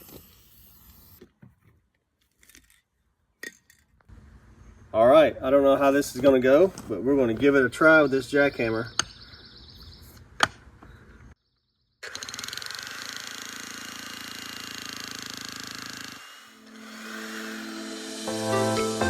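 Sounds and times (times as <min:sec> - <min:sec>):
electric jackhammer hammering: 0:12.0 - 0:19.0
music: 0:16.6 - 0:19.0.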